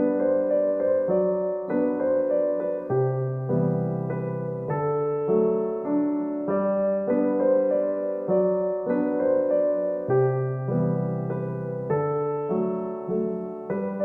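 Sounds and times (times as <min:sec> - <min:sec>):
gentle piano music: 0:00.0 - 0:14.0.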